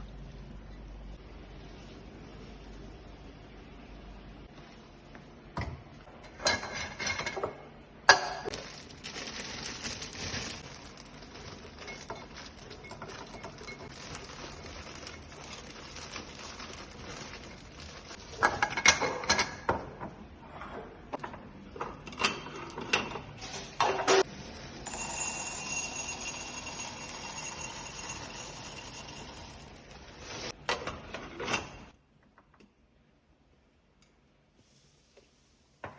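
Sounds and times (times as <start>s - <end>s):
objects knocking and clinking: 11.7s - 14.3s.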